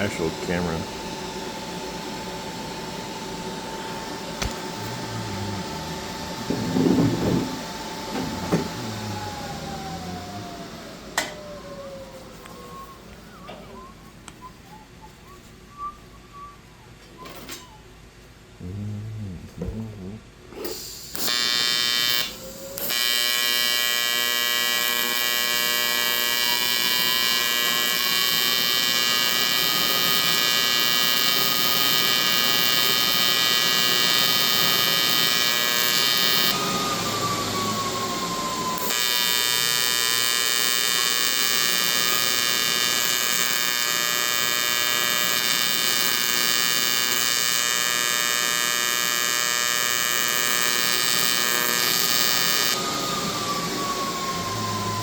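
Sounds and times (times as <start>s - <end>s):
welding arc buzzing: 0.0s - 10.6s, 20.6s - 52.9s
faint rising tone: 3.8s - 14.8s
welding hiss: 20.6s - 36.6s, 38.7s - 52.8s.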